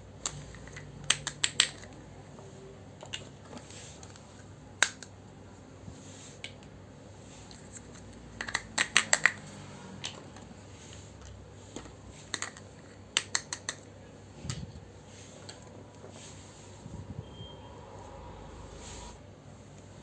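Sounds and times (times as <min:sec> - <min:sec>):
toy pieces clicking and tapping: 0:00.2 - 0:02.0, 0:07.8 - 0:10.2, 0:11.8 - 0:13.9.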